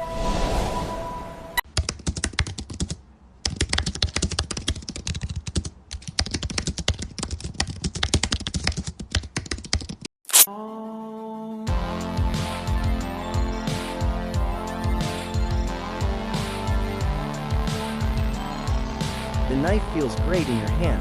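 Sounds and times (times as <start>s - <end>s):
bright swoosh: 0.0s - 1.6s.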